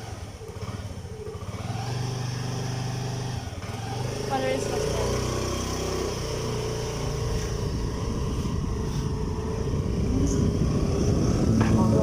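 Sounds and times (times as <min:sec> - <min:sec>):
motorbike running: 0:00.0 - 0:12.0
wind rumble on microphone: 0:06.2 - 0:12.0.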